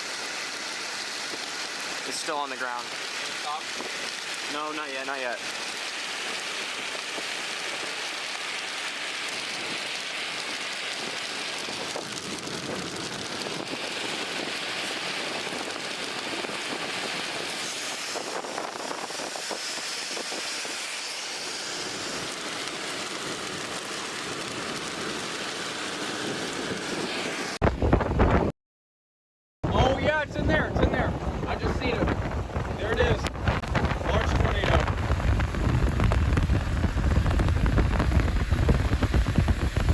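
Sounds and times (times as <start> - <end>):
heavy rain on a vehicle: 0.0 - 27.6, 33.2 - 39.9.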